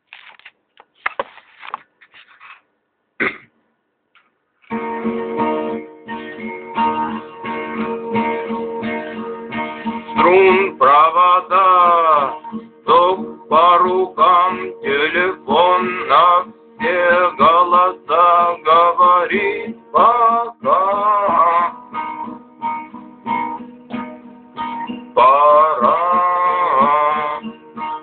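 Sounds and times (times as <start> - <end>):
guitar strumming chords: 4.7 - 28.0
man singing: 10.1 - 21.9, 25.1 - 27.7.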